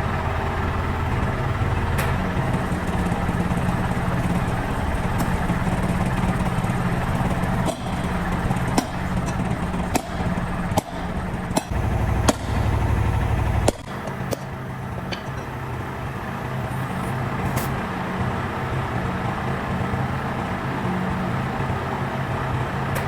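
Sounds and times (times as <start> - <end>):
engine idling: 0.0 - 23.0
sharp knocks: 7.2 - 12.8, 13.6 - 14.5.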